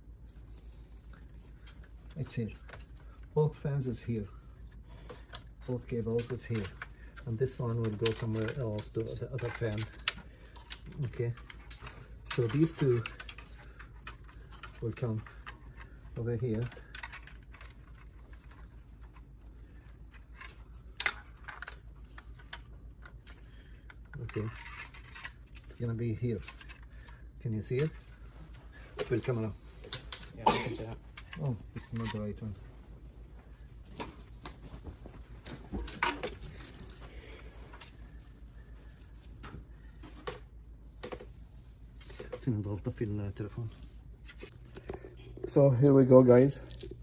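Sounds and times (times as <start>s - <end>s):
steady low hum: 0.0s - 47.0s
clicks of computer parts handled: 6.1s - 19.3s, 29.0s - 32.4s.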